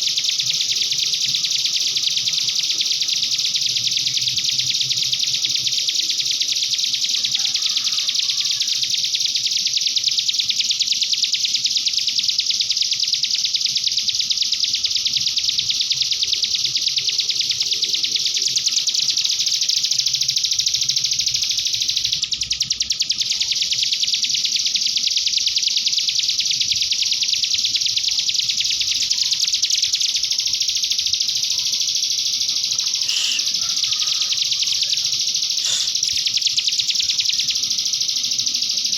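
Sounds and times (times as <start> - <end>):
songbird singing trills: 13.6 - 38.9.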